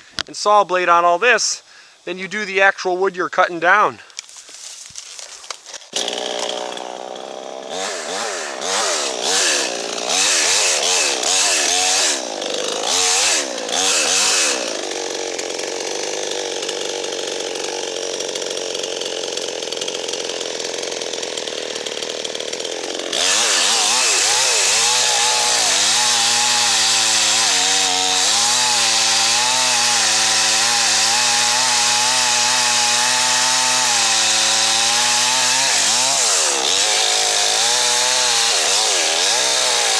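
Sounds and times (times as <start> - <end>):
chainsaw revving and cutting wood: 5.1 - 39.9.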